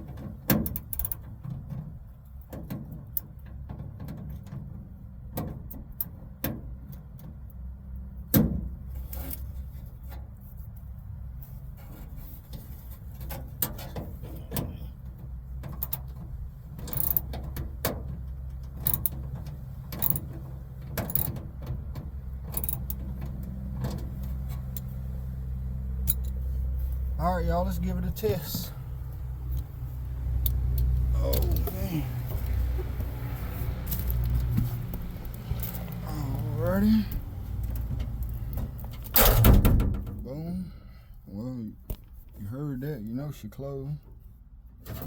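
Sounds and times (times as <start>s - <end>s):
steady low hum: 8.1s - 44.1s.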